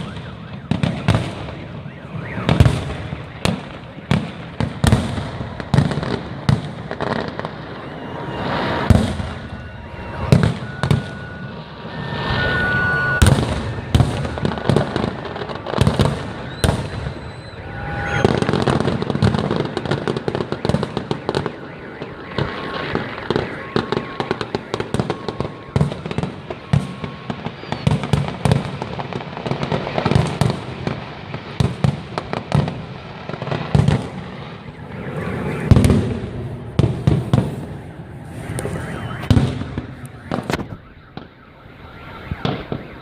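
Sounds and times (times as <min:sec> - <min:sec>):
fireworks bangs: 0:00.0 - 0:43.0
fireworks crackling: 0:00.0 - 0:43.0
high steady tones: 0:07.4 - 0:27.3.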